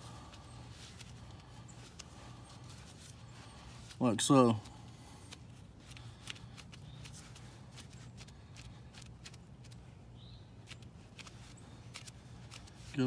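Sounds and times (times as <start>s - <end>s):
hands pressing gum clicks and rustles: 0.0s - 10.0s, 10.6s - 13.0s
low steady hum: 0.0s - 13.0s.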